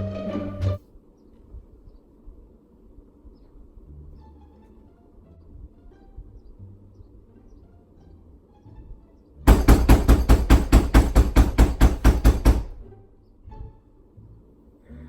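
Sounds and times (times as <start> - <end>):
rapid loud banging on door: 9.5 - 12.9.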